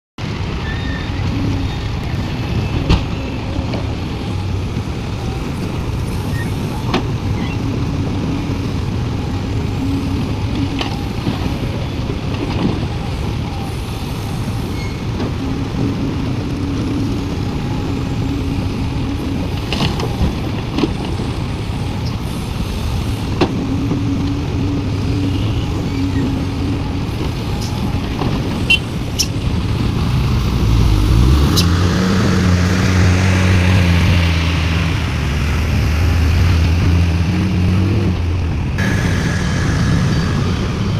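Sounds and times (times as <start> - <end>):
excavator diesel engine running: 0.2 - 40.9
hydraulic hum: 38.8 - 40.9.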